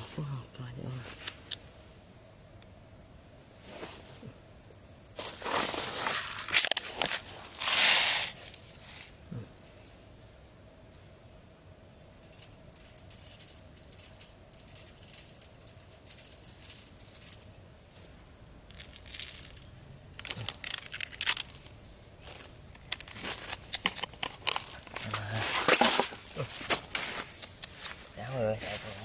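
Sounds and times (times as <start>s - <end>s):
dry rustling crackles: 5.1s - 9.2s, 12.2s - 29.0s.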